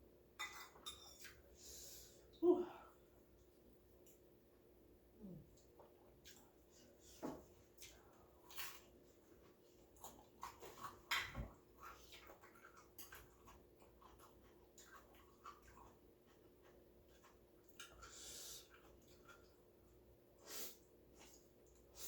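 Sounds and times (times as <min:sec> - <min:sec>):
person chewing noodles: 0:07.6 - 0:20.1.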